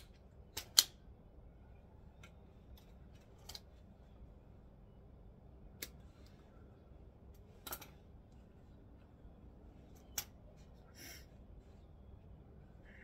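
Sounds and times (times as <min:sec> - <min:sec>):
hand tool clicks and snips: 0:00.0 - 0:01.0.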